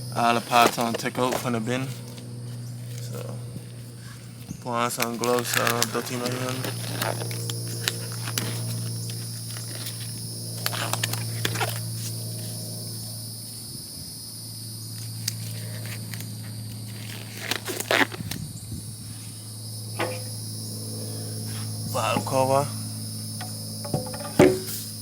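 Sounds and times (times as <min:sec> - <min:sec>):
low hum: 0:18.4 - 0:25.0
high-pitched buzz: 0:18.6 - 0:25.0
gloves and parts rustling and knocking: 0:23.4 - 0:24.9.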